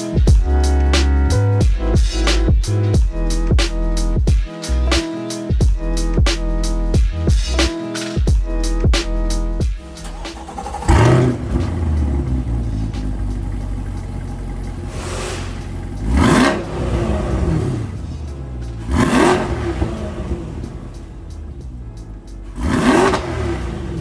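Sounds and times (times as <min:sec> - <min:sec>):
engine throttle blips: 0:10.0 - 0:21.3
car engine running: 0:10.0 - 0:21.8.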